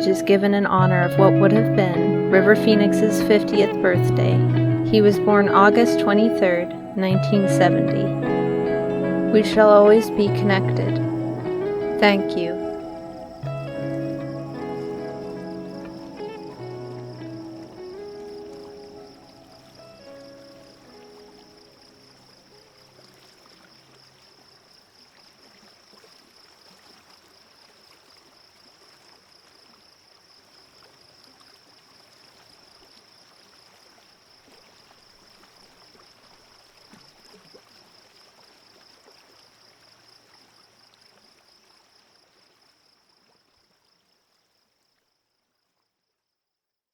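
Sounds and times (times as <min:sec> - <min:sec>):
stream running water: 0:00.0 - 0:45.9.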